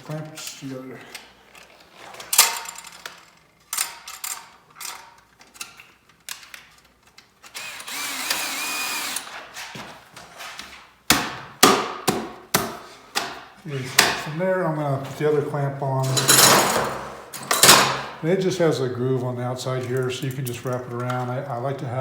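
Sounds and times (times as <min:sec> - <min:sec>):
small power drill running: 0:07.5 - 0:09.3.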